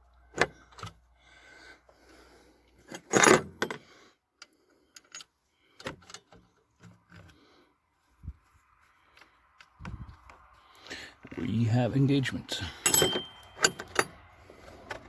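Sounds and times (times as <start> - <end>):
metal tools clinking and rattling: 2.8 - 3.8, 12.5 - 14.7.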